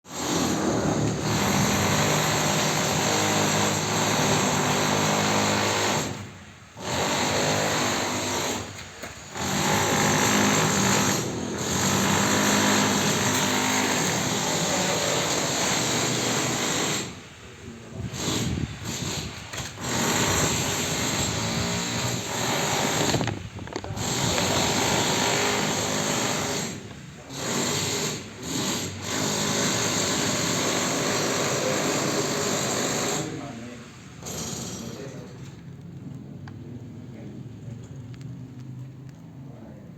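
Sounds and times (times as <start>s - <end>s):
power tool motor running: 0.2s - 17.2s.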